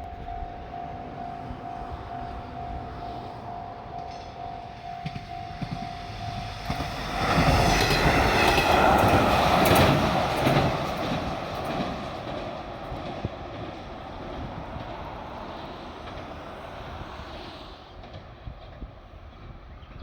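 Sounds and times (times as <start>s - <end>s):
level-crossing alarm chimes: 0.0s - 8.1s
train engine noise: 0.0s - 20.0s
train wheel clatter: 0.0s - 20.0s.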